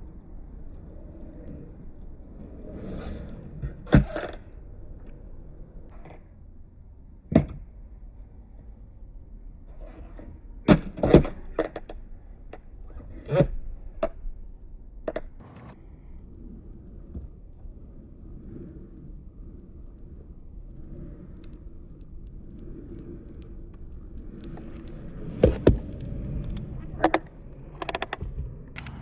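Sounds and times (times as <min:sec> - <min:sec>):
low background rumble: 0:00.0 - 0:29.0
skateboard clacking on concrete: 0:15.1 - 0:15.8, 0:17.3 - 0:29.0.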